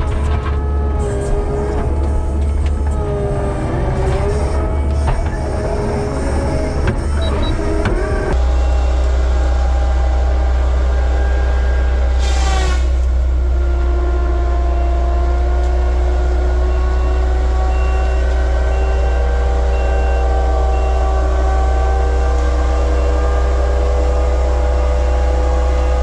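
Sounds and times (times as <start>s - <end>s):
heavy machine engine droning: 0.0s - 26.0s
burst of noise: 4.6s - 13.3s.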